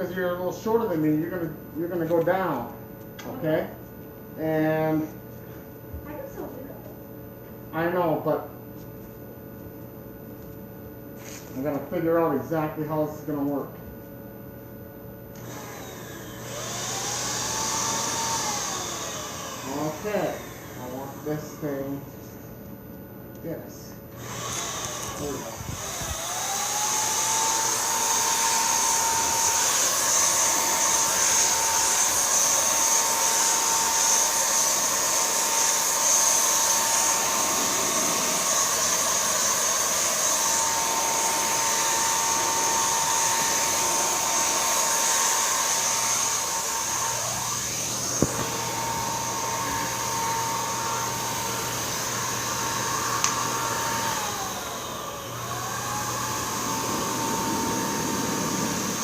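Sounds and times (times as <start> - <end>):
paint sprayer motor whining: 15.3 - 22.1, 24.1 - 59.0
sharp clicks: 53.2 - 53.4.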